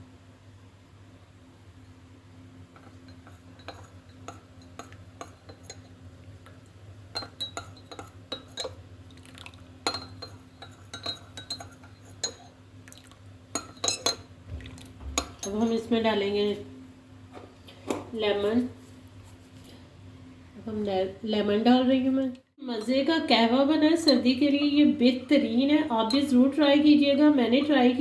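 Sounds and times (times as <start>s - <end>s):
metal spoon clinking cup: 3.1s - 5.9s, 7.2s - 8.8s, 9.8s - 12.5s, 13.5s - 14.2s.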